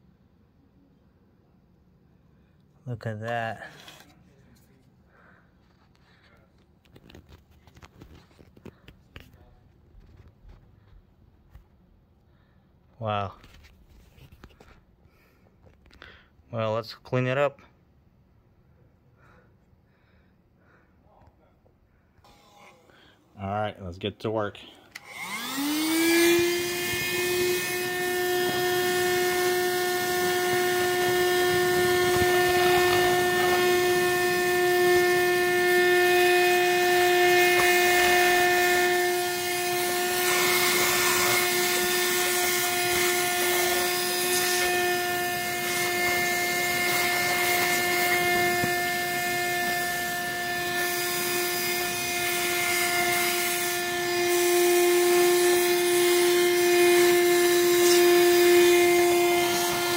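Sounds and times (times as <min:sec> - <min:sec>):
electric motor high whine: 0:22.2 - 0:22.9, 0:24.9 - 0:59.9.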